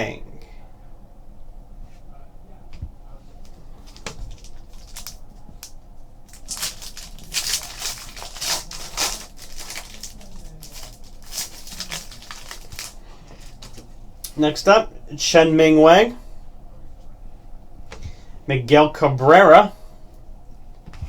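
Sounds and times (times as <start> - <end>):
wrapper tearing and crinkling: 3.8 - 5.7, 6.3 - 13.8.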